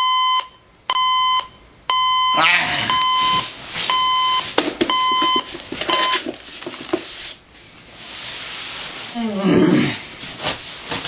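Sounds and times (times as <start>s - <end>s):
electronic alarm beeping: 0.0s - 6.3s
knocks and rustling: 3.2s - 7.4s.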